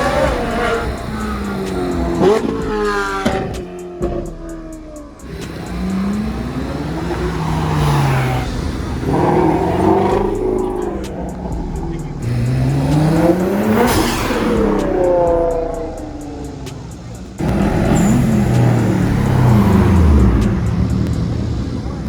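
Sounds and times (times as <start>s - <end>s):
car engines revving: 0.0s - 22.0s.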